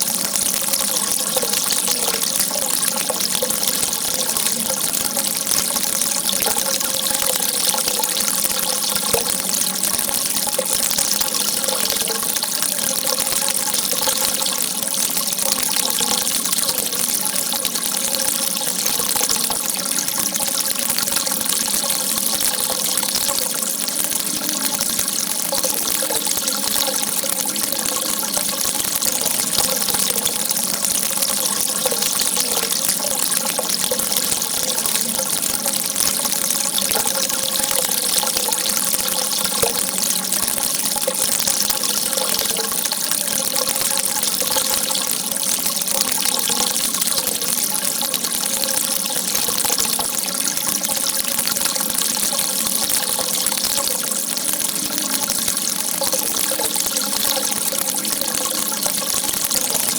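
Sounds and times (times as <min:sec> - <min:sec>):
running water rushing: 0:00.0 - 0:59.9
water gurgling: 0:00.0 - 0:59.9.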